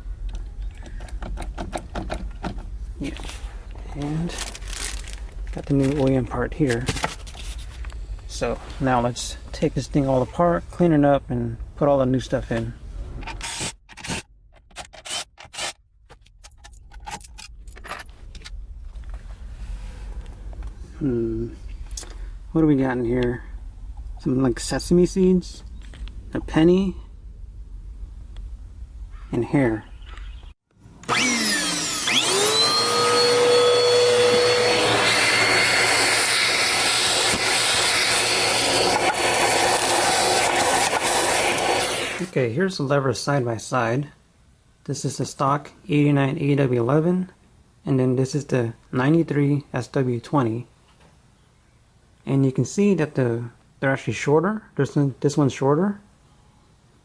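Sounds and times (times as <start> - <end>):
vacuum cleaner motor whining: 31.0 - 42.3.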